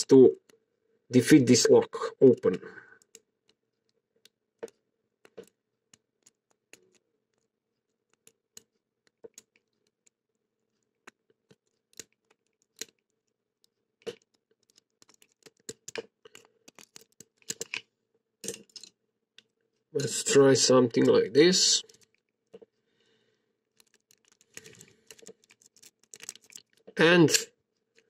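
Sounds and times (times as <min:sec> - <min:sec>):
lock-picking clicks and scrapes: 0:03.0 - 0:20.4, 0:21.8 - 0:22.7, 0:23.7 - 0:26.9.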